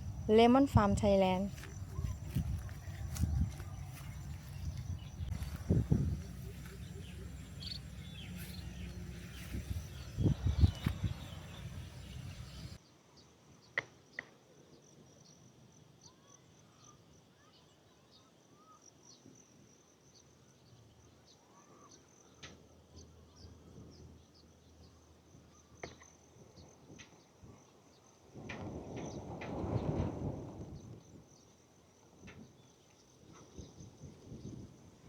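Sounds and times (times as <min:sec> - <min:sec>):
faint bird chirps: 0:01.6 - 0:13.3
low rumbling and thumps: 0:01.7 - 0:12.8.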